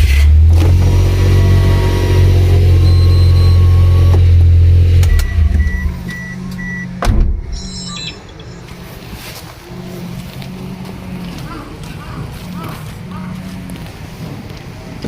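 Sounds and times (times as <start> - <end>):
car engine droning: 0.0 - 15.0
short electronic beeps: 2.7 - 4.1, 5.1 - 9.2.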